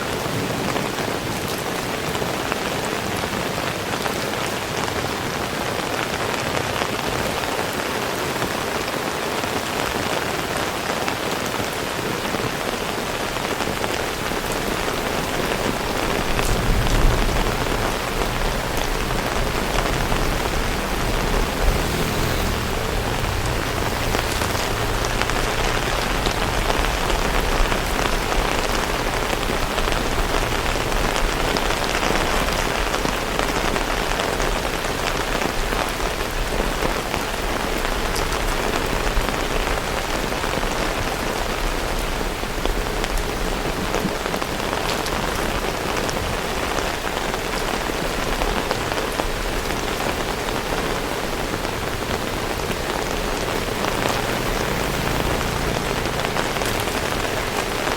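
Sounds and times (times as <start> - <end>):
heavy rain falling: 0.0 - 57.9
raindrops ticking: 12.8 - 57.9.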